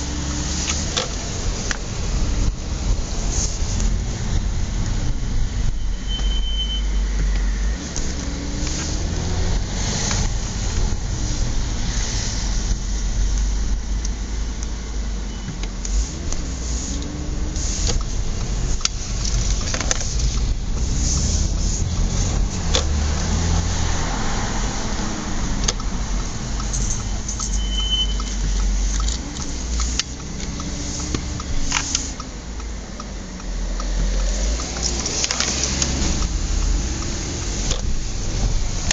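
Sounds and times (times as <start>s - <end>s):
car engine and road rumble: 0.0s - 38.9s
high-pitched brake squeal: 5.7s - 7.8s, 15.2s - 15.6s, 26.7s - 28.4s.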